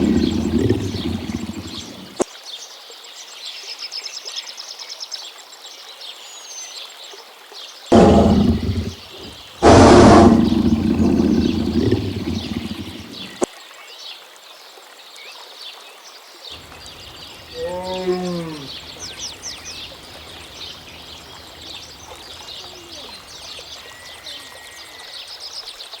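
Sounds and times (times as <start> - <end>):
drawn-out animal call: 0.0 - 2.1, 7.9 - 13.4, 17.0 - 20.0
wild birds chirping: 0.0 - 2.2, 7.9 - 13.5, 16.5 - 25.8.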